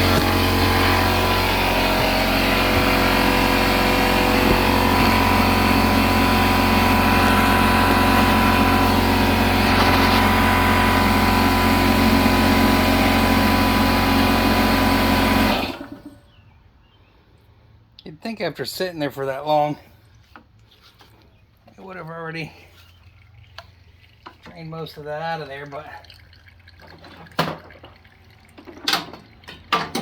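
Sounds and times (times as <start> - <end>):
engine running: 0.0 - 16.2.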